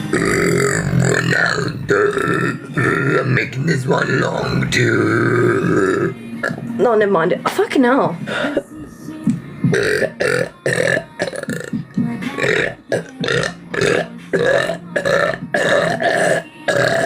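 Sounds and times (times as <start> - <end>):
woman burping: 0.0 - 3.4, 5.0 - 6.7, 9.3 - 17.0.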